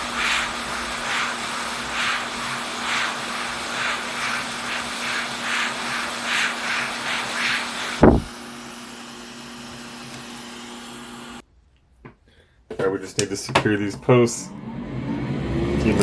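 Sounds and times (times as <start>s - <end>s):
hot air station blowing: 0.0s - 11.4s.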